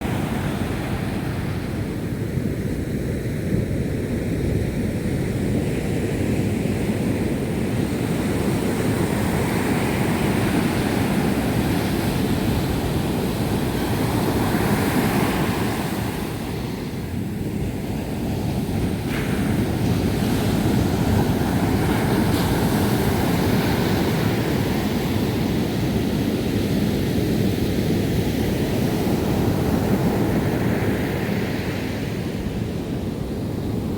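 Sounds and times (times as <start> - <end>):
waves washing ashore: 0.0 - 33.9
wind rumbling on microphone: 0.0 - 33.9.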